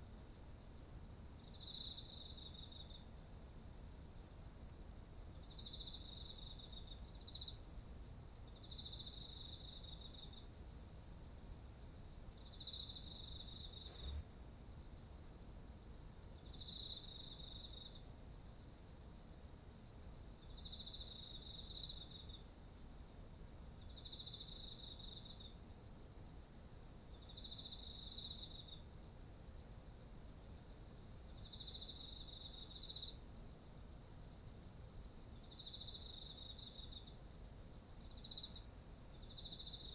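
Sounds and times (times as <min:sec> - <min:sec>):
insect chirps: 0:01.1 - 0:04.3, 0:11.6 - 0:14.9, 0:16.0 - 0:19.5, 0:27.1 - 0:39.9.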